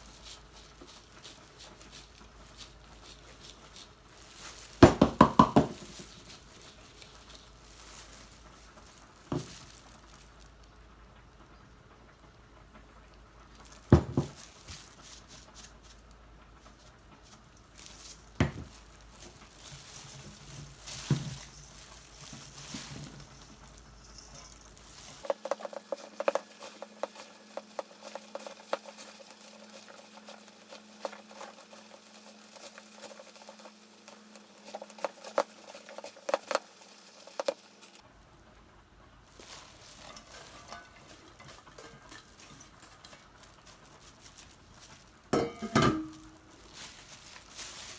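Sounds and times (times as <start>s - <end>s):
utensils clicking in a pan: 19.0s - 38.0s, 39.4s - 47.9s.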